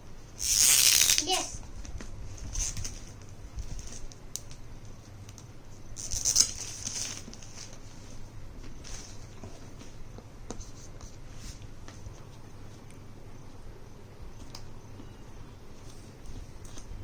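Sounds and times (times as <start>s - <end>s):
packaging rustling: 6.0s - 8.2s.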